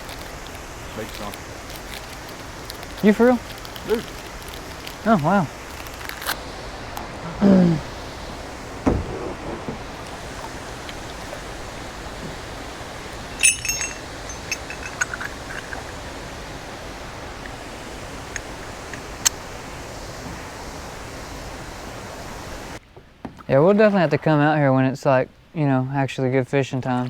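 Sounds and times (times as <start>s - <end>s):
water rushing from dam: 14.7s - 22.8s.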